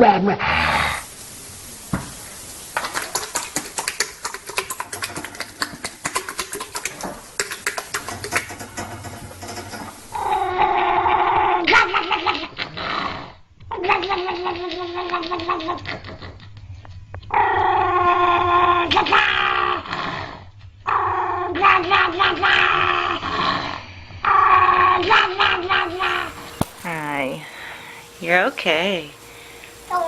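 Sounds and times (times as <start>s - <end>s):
rapid clicking and clattering: 2.8s - 10.0s
animal's long wavering cry: 10.1s - 16.4s, 17.3s - 26.5s.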